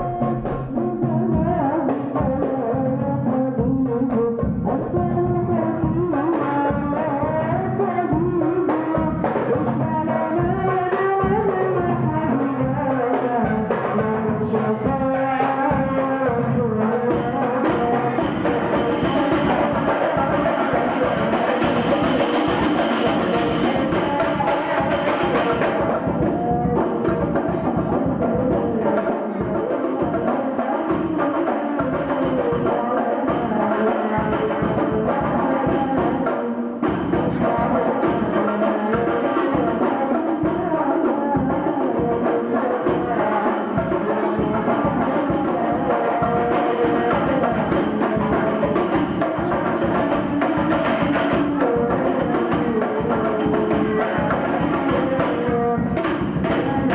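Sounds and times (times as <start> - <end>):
frame drums beating: 0.0 - 1.6, 17.1 - 56.9
voices singing: 0.0 - 56.9.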